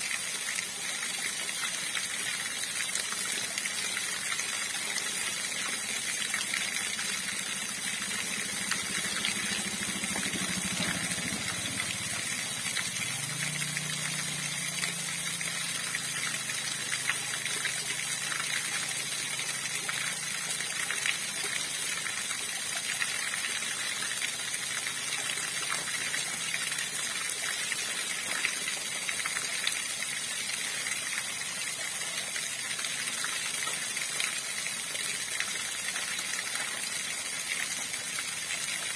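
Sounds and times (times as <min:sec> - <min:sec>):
river water rushing: 0:05.8 - 0:19.6.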